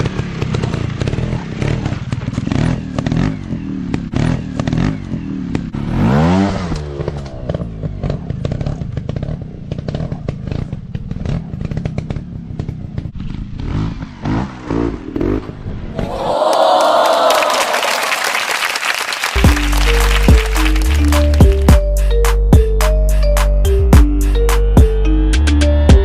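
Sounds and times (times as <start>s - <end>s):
dirt bike engine revving: 0.0s - 15.9s.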